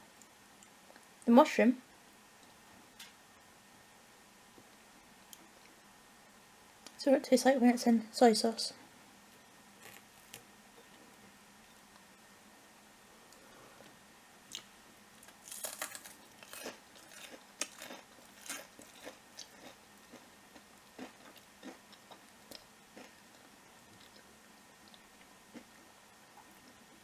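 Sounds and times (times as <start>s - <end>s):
person chewing crunchy food: 14.5s - 25.8s.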